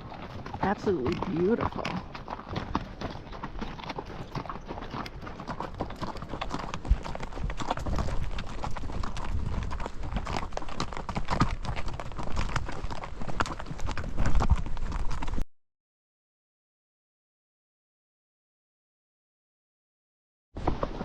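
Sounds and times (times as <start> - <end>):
horse hooves clip-clopping: 0.0 - 15.4, 20.6 - 21.0.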